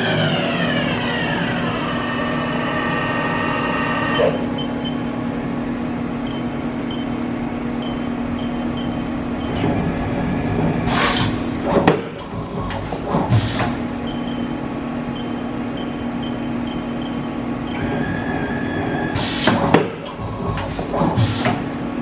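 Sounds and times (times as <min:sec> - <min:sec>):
machine spindle whine winding down: 0:00.0 - 0:06.6, 0:17.7 - 0:19.5
machine humming: 0:00.0 - 0:22.0.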